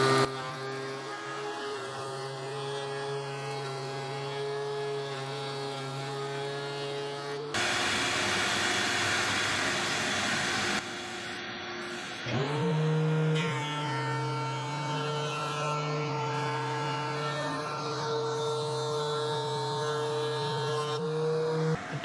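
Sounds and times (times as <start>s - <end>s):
motor spinning up whine: 0.0s - 0.4s, 7.6s - 12.2s
thickness planer motor whine: 0.0s - 22.0s
wood being planed rushing: 7.6s - 10.8s.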